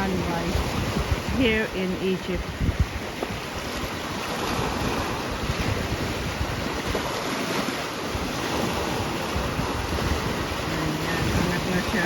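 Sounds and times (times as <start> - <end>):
sea waves washing ashore: 0.0 - 12.0
wind buffeting microphone: 0.0 - 12.0.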